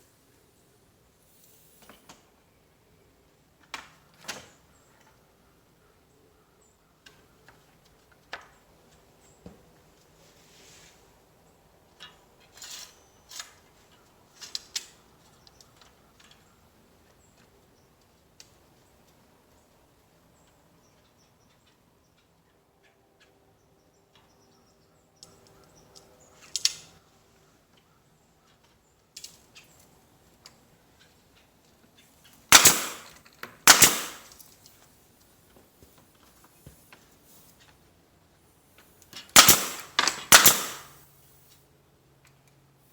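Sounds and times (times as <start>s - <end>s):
loud sharp bangs: 32.5s - 34.3s, 39.4s - 41.0s
sharp knocks and clatter: 32.5s - 34.4s, 39.3s - 41.0s.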